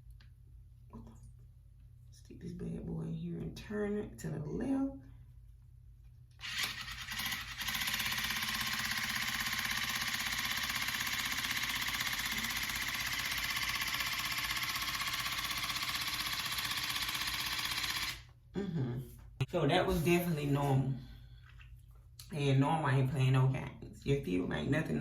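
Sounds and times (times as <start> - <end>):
water flosser pump buzzing: 6.4 - 18.3.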